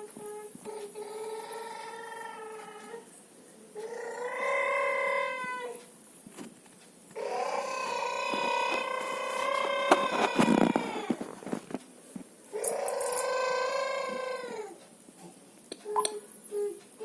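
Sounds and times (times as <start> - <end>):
baby making drawn-out vocal sounds: 0.6 - 3.1, 3.8 - 5.8, 7.1 - 11.2, 12.5 - 14.8.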